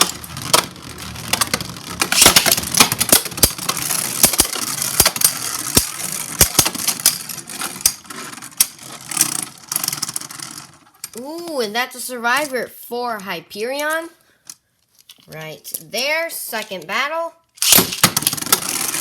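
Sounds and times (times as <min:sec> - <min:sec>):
spinning tops colliding: 0:01.4 - 0:07.2, 0:17.6 - 0:18.8.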